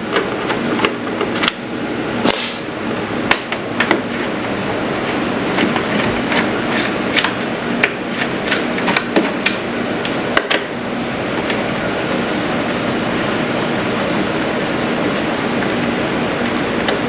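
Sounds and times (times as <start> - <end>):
steady background noise: 0.0 - 17.0.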